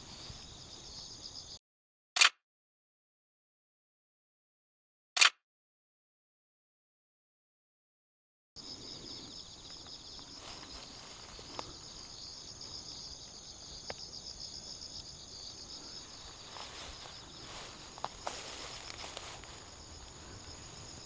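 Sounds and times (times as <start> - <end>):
insects trilling: 0.0 - 1.6, 8.6 - 21.0.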